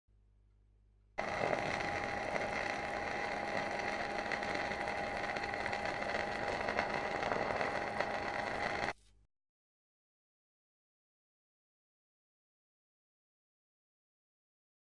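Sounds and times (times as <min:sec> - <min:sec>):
power tool electric motor whining: 0:01.2 - 0:09.0.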